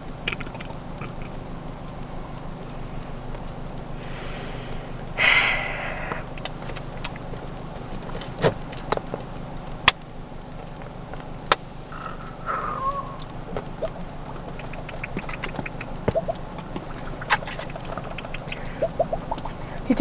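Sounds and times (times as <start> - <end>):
sharp clicks and knocks: 0.0 - 3.9, 6.1 - 11.7, 13.2 - 19.6
low hum inside car: 0.0 - 20.0
breathy rustling burst: 3.9 - 6.3.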